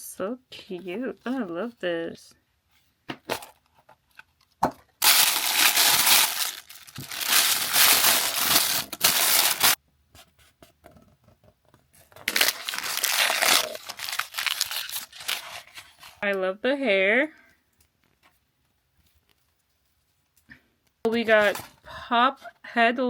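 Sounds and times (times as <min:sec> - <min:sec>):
toy packaging torn and crumpled: 0:05.0 - 0:09.8, 0:12.0 - 0:16.2
small clicks and rustles: 0:17.4 - 0:21.0.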